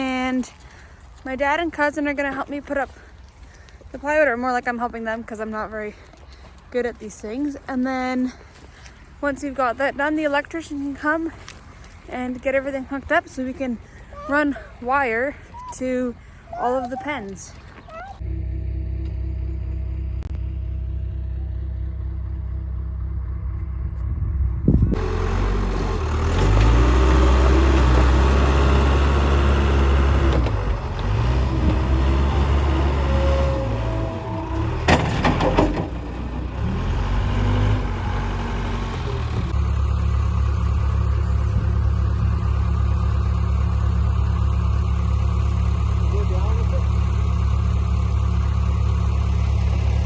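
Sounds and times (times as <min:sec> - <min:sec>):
vehicle engine revving: 0:18.2 - 0:50.0.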